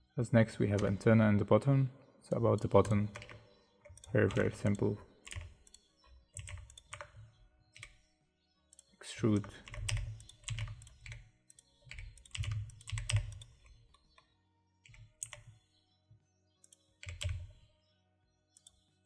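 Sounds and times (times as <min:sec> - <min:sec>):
keyboard keystrokes: 0:02.3 - 0:05.8, 0:06.4 - 0:07.2, 0:09.6 - 0:14.0, 0:16.7 - 0:17.5.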